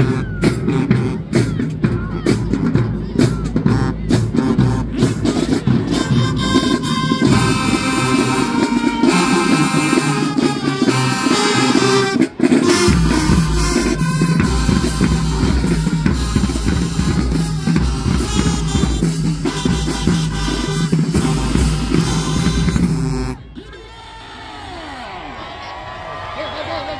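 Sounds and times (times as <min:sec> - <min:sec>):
loud music with drum beat: 0:00.0 - 0:23.4
heavy deep bass line: 0:12.8 - 0:23.5.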